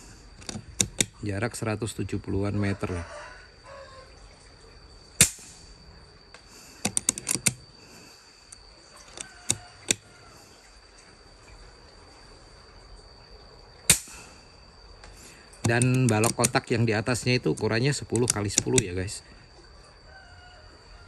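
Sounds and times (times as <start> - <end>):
air rifle shots: 13.9 - 14.2
light clicks: 15.0 - 16.6.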